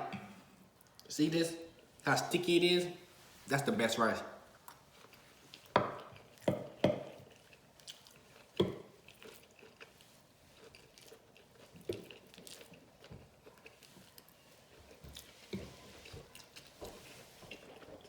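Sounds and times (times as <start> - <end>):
wet chewing and lip-smacking: 4.6 - 18.0.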